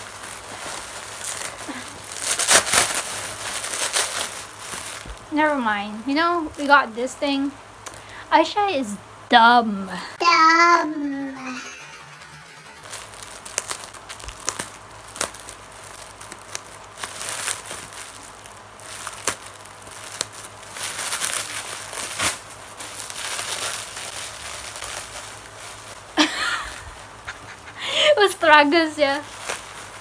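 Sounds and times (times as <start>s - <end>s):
plastic packaging crinkling: 0.0s - 5.3s, 13.2s - 26.2s, 29.0s - 30.0s.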